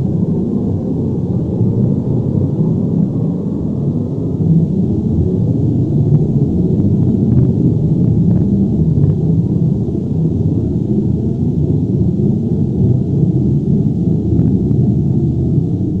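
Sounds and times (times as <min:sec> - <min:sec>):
deep rumble: 0:00.0 - 0:16.0.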